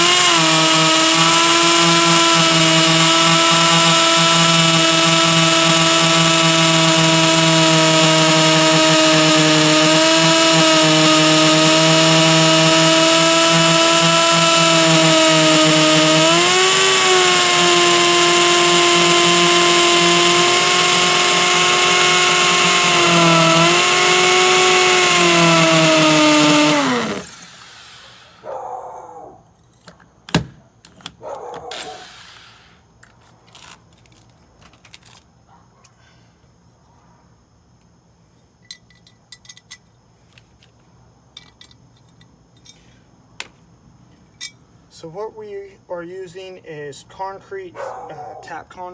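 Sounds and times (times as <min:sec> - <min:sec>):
hammer drill drilling concrete: 0:00.0 - 0:28.4, 0:31.6 - 0:32.7.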